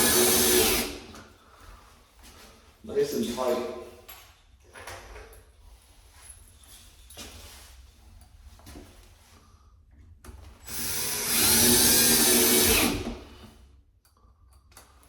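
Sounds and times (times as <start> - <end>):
cordless drill whirring: 0.0 - 1.1, 10.6 - 13.5.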